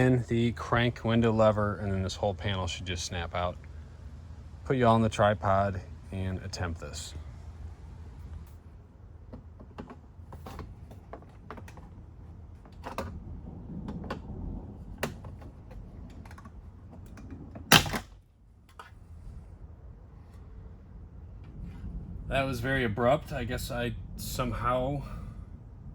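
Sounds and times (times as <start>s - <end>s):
plastic trim snapping: 17.7s - 18.1s.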